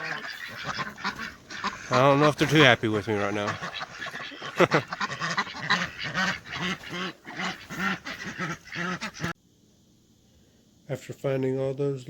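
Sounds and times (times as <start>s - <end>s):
ducks quacking: 0.0s - 9.4s.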